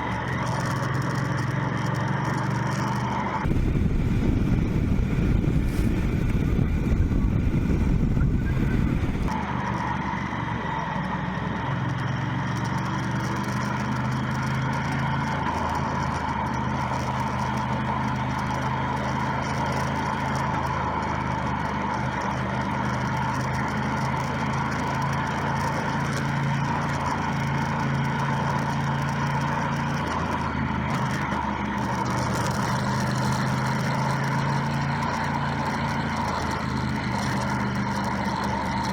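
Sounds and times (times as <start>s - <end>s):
motorcycle engine running: 0.0s - 38.9s
wind rumble on microphone: 3.4s - 9.4s.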